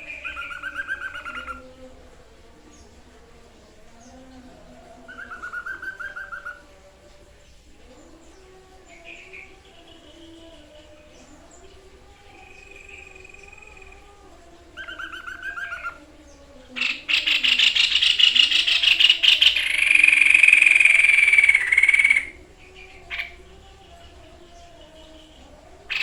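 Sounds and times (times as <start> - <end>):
bird trilling and buzzing: 16.8 - 23.4.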